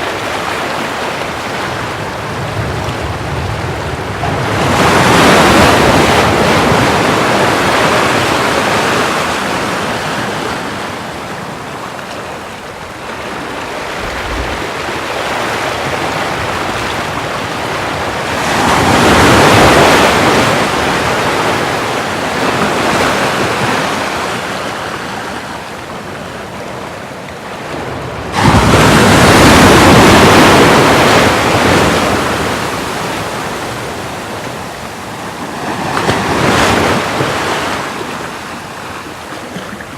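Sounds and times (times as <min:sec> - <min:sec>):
ocean waves breaking: 0:00.0 - 0:39.9
wave crashing: 0:12.8 - 0:24.0, 0:28.3 - 0:34.5.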